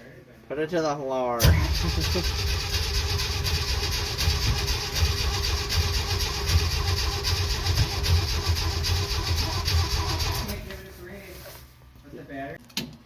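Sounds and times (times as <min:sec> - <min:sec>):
engine running roughly: 0:01.4 - 0:11.3.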